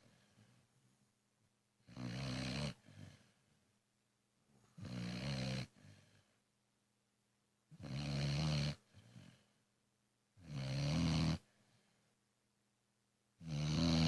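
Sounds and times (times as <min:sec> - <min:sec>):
pet snoring: 0:01.8 - 0:03.3, 0:04.8 - 0:06.2, 0:07.8 - 0:09.5, 0:10.4 - 0:11.5, 0:13.4 - 0:14.0.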